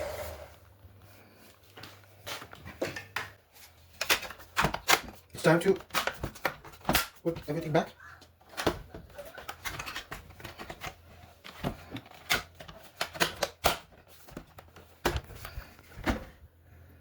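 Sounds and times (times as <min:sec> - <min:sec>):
plastic parts clicking and knocking: 0:02.8 - 0:16.3.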